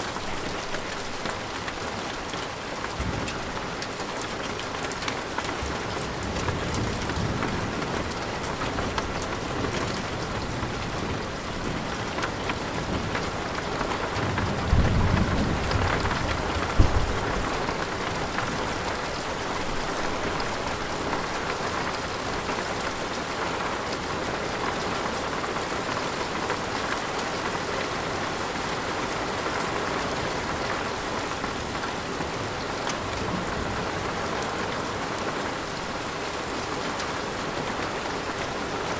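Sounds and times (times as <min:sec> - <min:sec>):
steady rain falling: 0:00.0 - 0:38.9
thunder rolling and cracking: 0:14.2 - 0:18.0.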